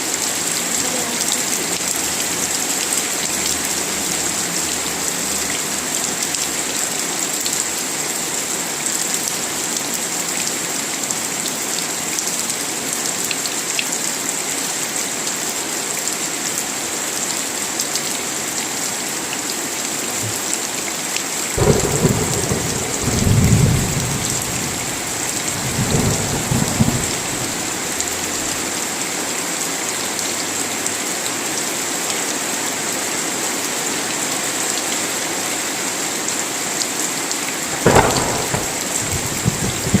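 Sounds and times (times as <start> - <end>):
heavy rain: 0.0 - 40.0
low thunder rumble: 21.6 - 28.7, 37.7 - 40.0.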